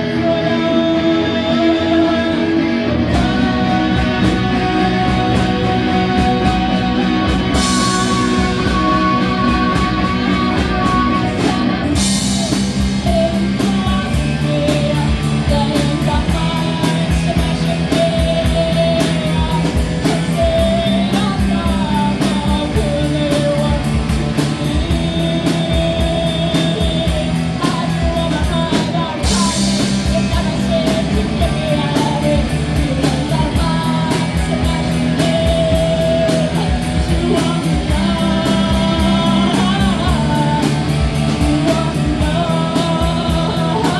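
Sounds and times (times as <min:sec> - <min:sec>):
electric guitar: 0:00.0 - 0:43.9
rock band playing live: 0:00.0 - 0:43.9.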